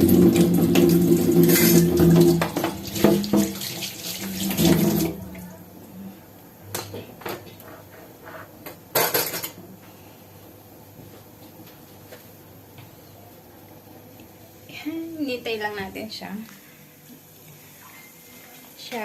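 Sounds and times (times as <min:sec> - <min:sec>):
tap water running: 0:00.0 - 0:05.5
kitchenware clattering: 0:00.2 - 0:05.2, 0:08.6 - 0:09.6.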